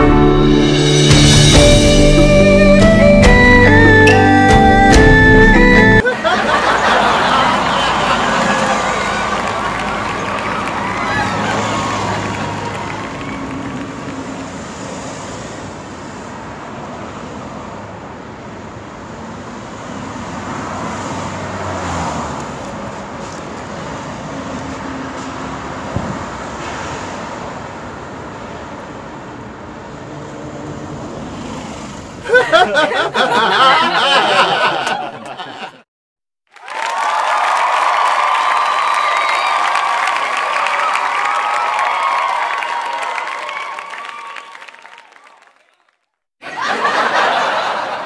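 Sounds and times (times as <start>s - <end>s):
road traffic noise: 0.0s - 35.8s, 46.4s - 48.0s.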